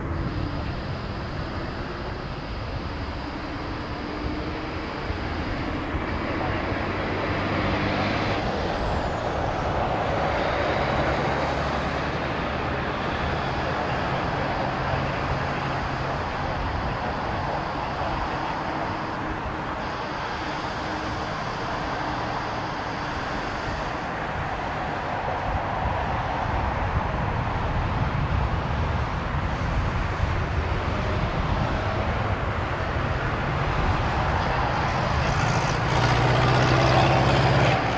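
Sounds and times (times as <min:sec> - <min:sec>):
high engine whine: 0:00.0 - 0:37.9
jet engines roaring: 0:00.0 - 0:37.9.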